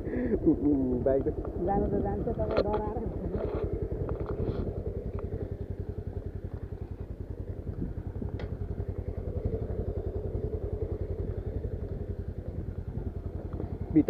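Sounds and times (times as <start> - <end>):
motorcycle engine idling: 0.0 - 14.0.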